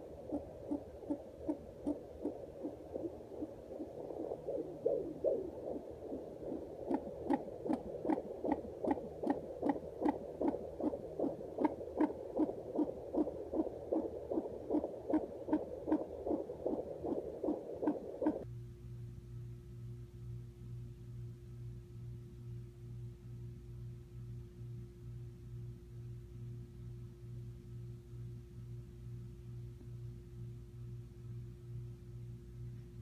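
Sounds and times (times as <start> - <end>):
fetal heartbeat whooshing pulses: 0.0 - 18.4.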